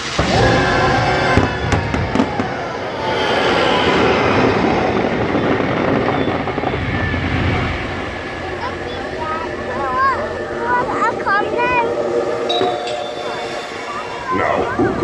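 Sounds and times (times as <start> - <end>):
fireworks rumbling and cracking: 0.0 - 11.9, 12.6 - 15.0.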